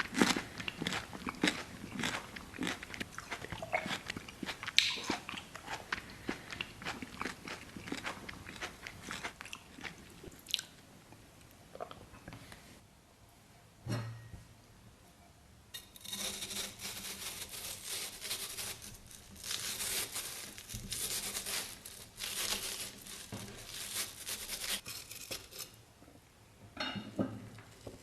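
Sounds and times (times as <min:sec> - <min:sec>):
crinkling and crackling: 0:16.0 - 0:25.8.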